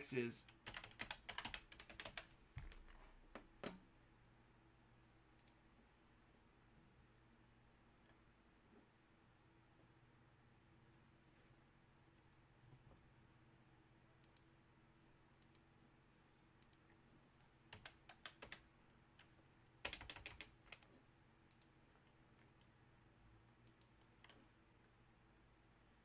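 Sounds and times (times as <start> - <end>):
computer keyboard typing: 0.5 - 3.0, 17.7 - 18.7, 19.8 - 20.9.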